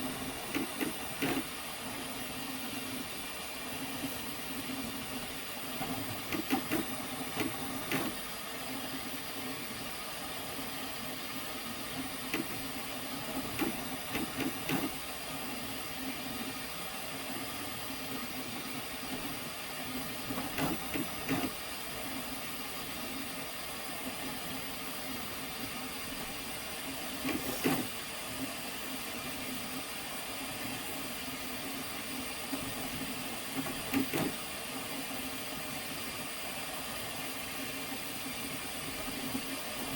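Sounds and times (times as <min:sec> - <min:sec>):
printer fan and motor hum: 0:00.0 - 0:39.9
printer clicks: 0:00.4 - 0:01.5, 0:06.2 - 0:08.2, 0:12.3 - 0:12.6, 0:13.4 - 0:15.0, 0:20.4 - 0:21.6, 0:27.2 - 0:27.9, 0:33.6 - 0:34.4.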